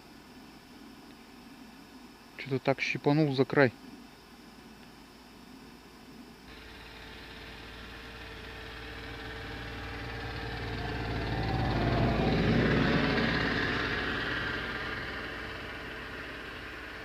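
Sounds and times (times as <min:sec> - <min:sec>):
motor engine passing by: 0:06.5 - 0:17.0.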